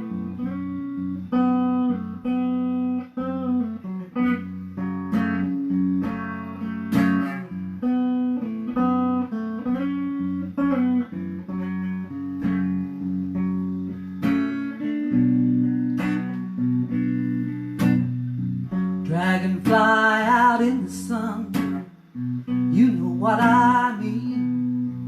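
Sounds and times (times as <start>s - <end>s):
instrumental guitar music: 0.0s - 25.0s.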